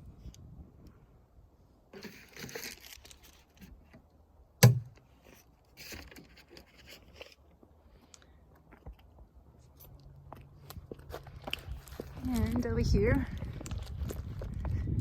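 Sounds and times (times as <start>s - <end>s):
sharp knock: 4.6s - 4.9s.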